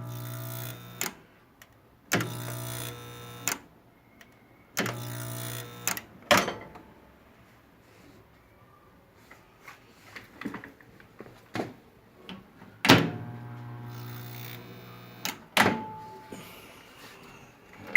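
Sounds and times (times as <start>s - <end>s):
microwave oven humming: 0.0s - 1.1s, 2.2s - 3.5s, 4.9s - 5.9s, 12.9s - 16.4s.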